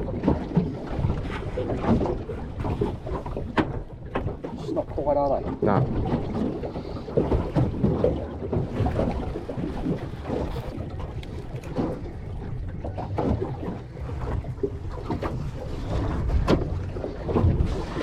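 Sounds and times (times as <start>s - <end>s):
water lapping against boat hull: 0.0s - 18.0s.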